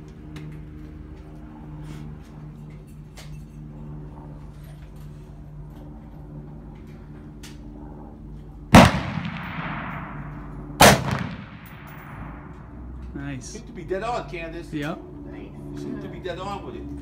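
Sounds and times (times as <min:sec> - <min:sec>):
rifle shots with echo: 0:08.7 - 0:12.7.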